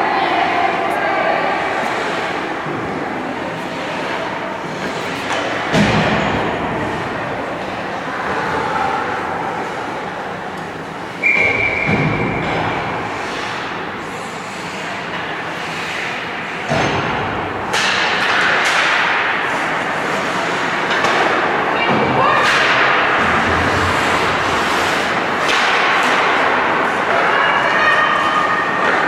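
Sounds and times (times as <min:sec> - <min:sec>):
hockey sticks and puck knocking: 0:16.7 - 0:27.3
skate blades scraping ice: 0:23.4 - 0:26.5.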